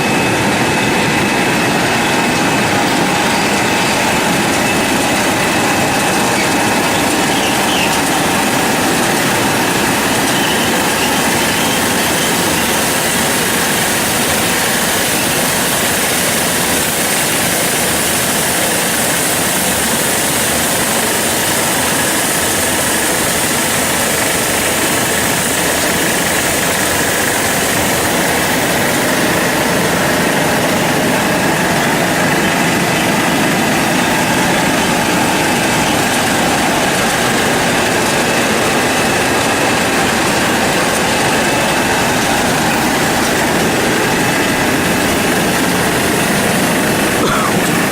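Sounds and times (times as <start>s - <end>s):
faint steady whines: 0.0s - 47.9s
washing machine mechanical noise: 0.0s - 47.9s.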